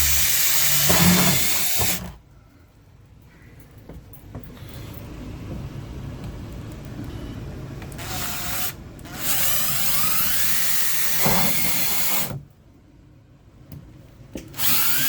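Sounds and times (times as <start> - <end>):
power drill boring through plastic: 0.0 - 2.2, 8.0 - 12.4, 14.6 - 15.0.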